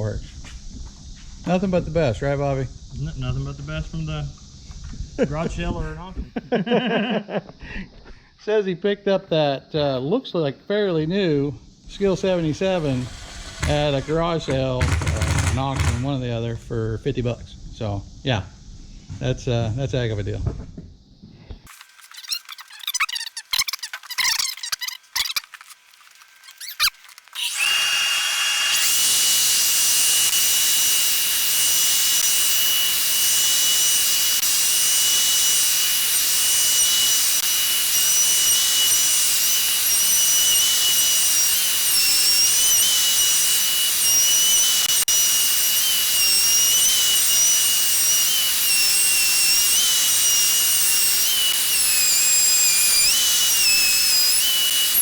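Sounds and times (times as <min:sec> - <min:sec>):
router whining through wood: 0:11.9 - 0:16.2, 0:21.7 - 0:55.0.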